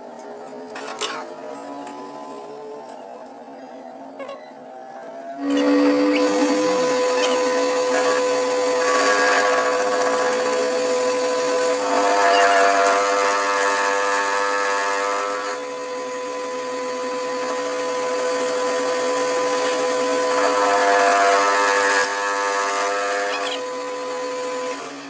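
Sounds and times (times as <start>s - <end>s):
machine tool whining: 0.0s - 25.0s
rough metal cutting: 5.4s - 25.0s.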